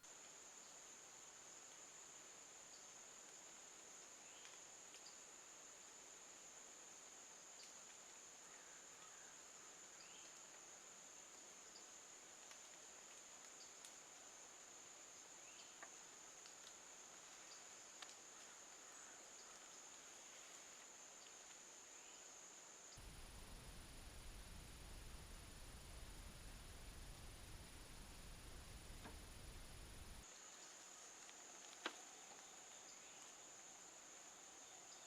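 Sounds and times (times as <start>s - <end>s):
insect trilling: 22.9s - 30.6s.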